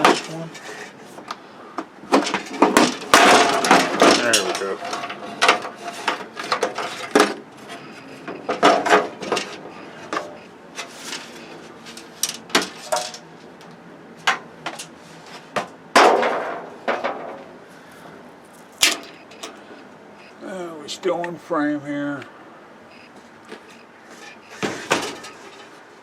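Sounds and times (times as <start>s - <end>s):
plastic and metal parts clattering: 0.0s - 1.3s, 2.0s - 13.3s, 23.6s - 25.9s.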